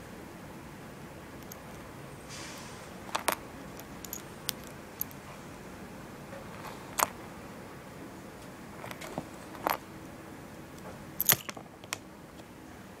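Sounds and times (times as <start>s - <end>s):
clicks and taps of small objects: 3.1s - 5.2s.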